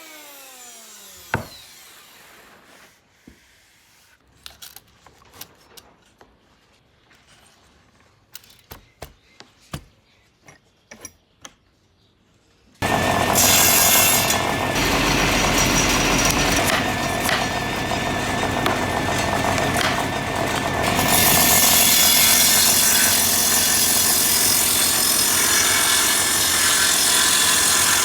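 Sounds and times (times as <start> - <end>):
hand tools tapping wood: 12.8 - 24.2
loud steady machine noise: 12.8 - 28.0.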